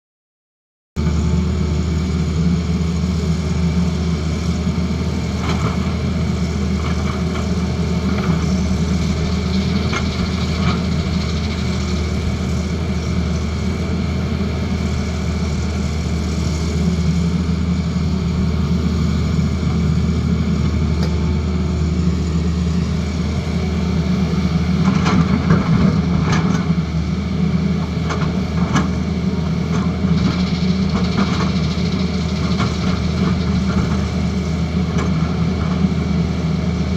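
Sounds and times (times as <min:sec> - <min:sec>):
excavator diesel engine running: 0:01.0 - 0:36.9.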